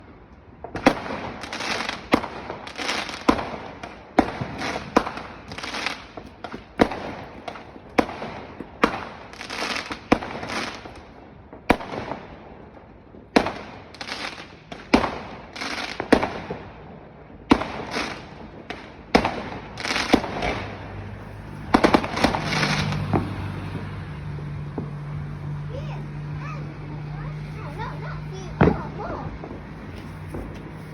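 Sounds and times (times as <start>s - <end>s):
fireworks bangs: 0.6s - 30.9s
fireworks crackling hiss: 0.8s - 11.9s, 13.4s - 16.6s, 17.6s - 23.8s, 27.4s - 30.9s.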